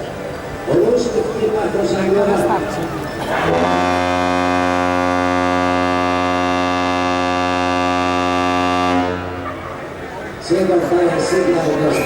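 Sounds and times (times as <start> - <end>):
ship horn low blast: 3.4 - 9.9.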